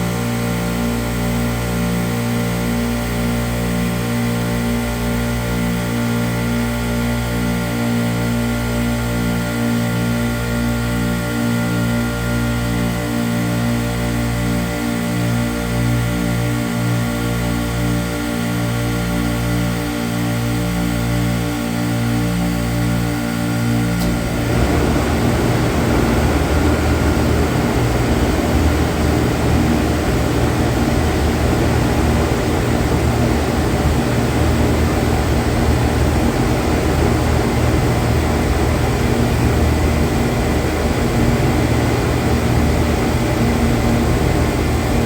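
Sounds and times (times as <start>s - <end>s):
air conditioner unit running: 0.0s - 45.0s.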